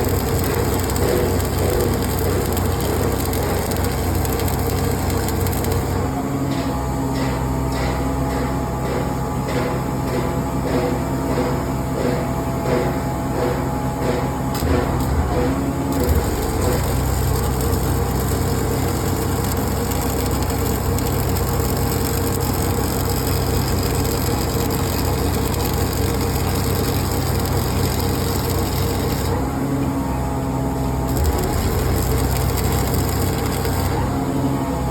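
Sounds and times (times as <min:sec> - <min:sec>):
arc welding crackling: 0:00.0 - 0:06.0, 0:14.6 - 0:29.5, 0:31.1 - 0:34.1
welding machine pulsing hum: 0:00.0 - 0:06.2, 0:14.5 - 0:34.9.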